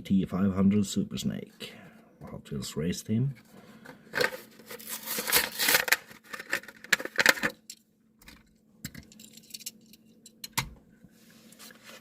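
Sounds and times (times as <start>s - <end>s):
plastic packaging being torn open: 4.6s - 7.6s.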